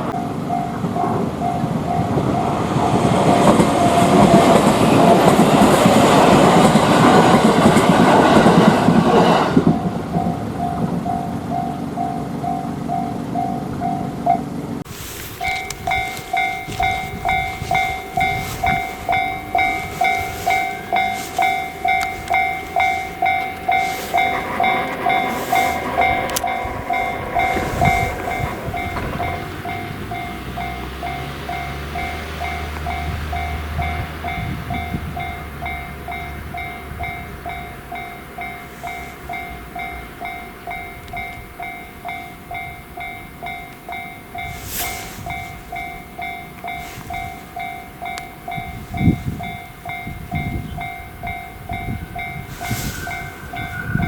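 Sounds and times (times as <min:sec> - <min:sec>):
train rumble and wheel clatter: 0:00.0 - 0:54.0
level crossing bell ringing: 0:00.2 - 0:02.1, 0:15.1 - 0:54.0.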